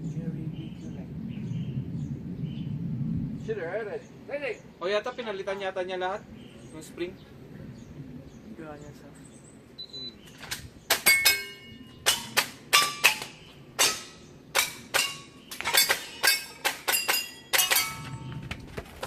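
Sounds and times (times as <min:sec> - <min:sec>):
pellets ringing on steel targets: 0:10.9 - 0:18.3.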